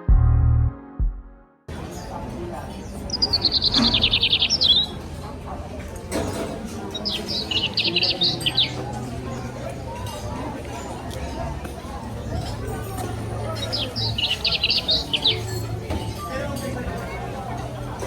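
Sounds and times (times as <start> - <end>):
songbird trilling: 3.1 - 4.9, 7.0 - 8.8, 13.6 - 15.7.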